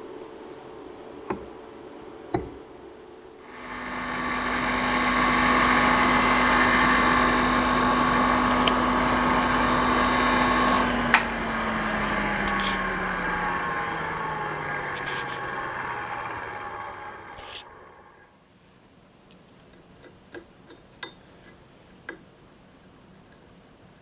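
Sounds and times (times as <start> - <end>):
grinder motor whine: 0.0 - 18.3.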